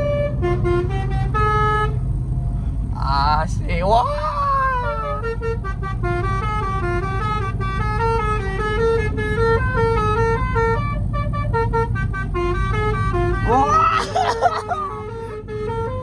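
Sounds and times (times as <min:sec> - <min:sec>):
low engine rumble: 0:00.0 - 0:16.0
musical horn playing a tune: 0:04.6 - 0:16.0.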